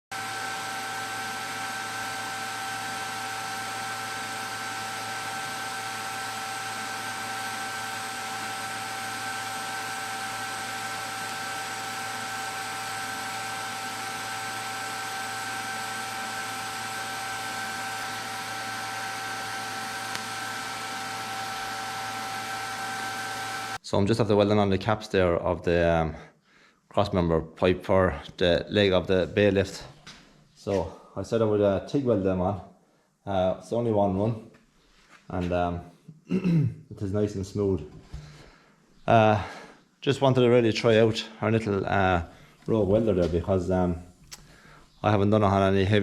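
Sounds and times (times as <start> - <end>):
machine hum and high whine: 0.1 - 23.8.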